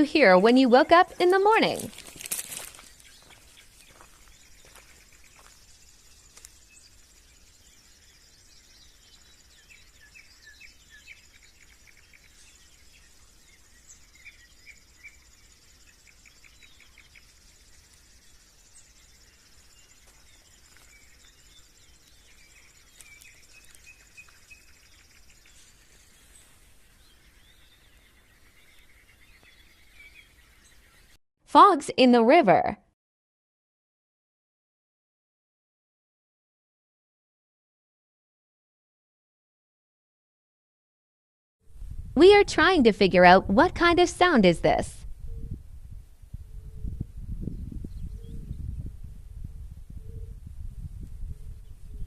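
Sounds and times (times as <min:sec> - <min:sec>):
birds chirping and calling: 0:00.0 - 0:31.2
high-pitched insect hum: 0:01.9 - 0:27.0.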